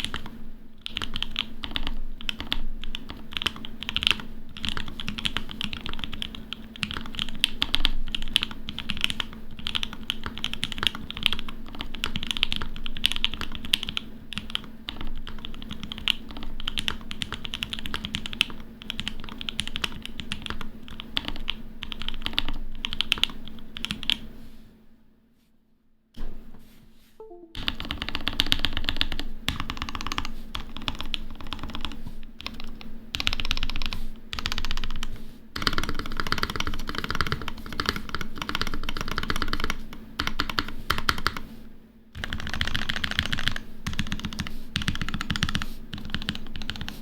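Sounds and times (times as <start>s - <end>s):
fast mechanical keyboard typing: 0.0s - 24.2s, 27.7s - 41.5s, 42.2s - 47.0s.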